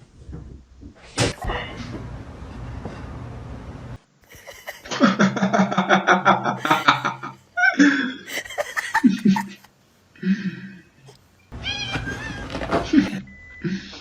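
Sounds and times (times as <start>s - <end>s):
person laughing hard: 4.3s - 9.7s.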